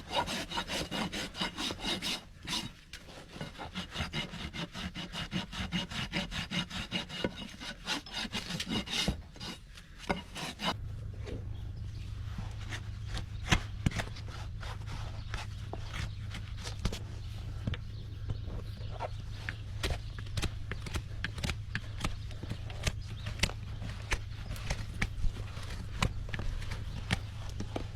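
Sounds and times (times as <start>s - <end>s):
hoof rasp filing hoof: 0.0s - 10.8s, 12.3s - 27.9s
steady low hum: 7.4s - 27.9s.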